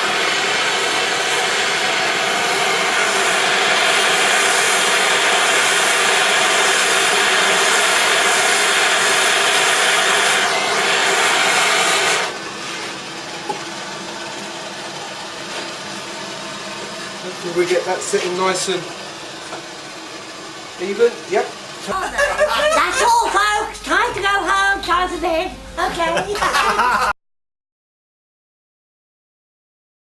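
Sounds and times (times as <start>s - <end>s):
quiet steady hum: 21.9s - 27.1s.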